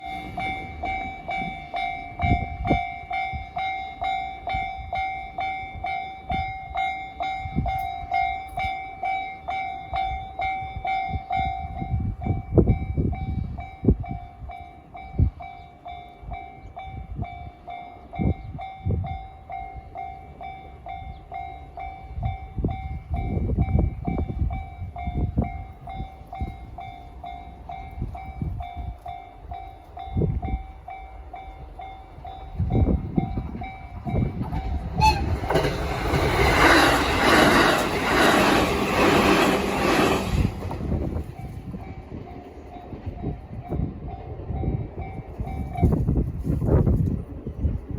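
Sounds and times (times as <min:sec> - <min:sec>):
train wheels thumping over rail joints: 0:34.1 - 0:41.4.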